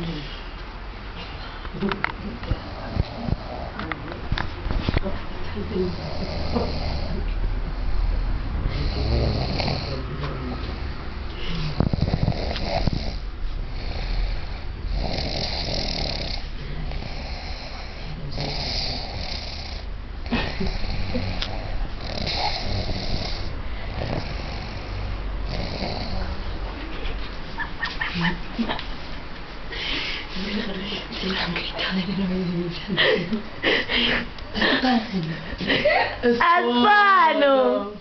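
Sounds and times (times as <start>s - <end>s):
snoring: 5.9s - 10.1s, 11.4s - 26.4s.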